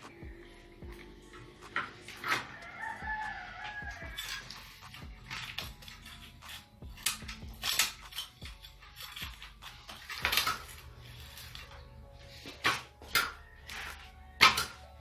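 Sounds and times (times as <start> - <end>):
rooster crowing: 2.2 - 4.8, 13.0 - 14.9
metal clinks and knocks: 3.6 - 15.0.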